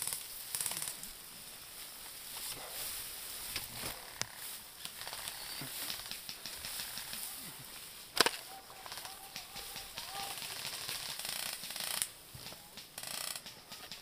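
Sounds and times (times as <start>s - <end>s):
sharp crack: 3.5s - 14.0s.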